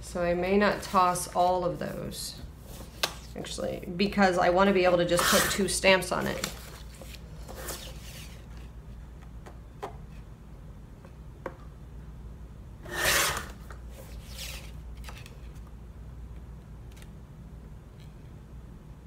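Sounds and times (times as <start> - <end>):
steady low hum: 0.0 - 19.0
paper rustling: 6.2 - 8.7.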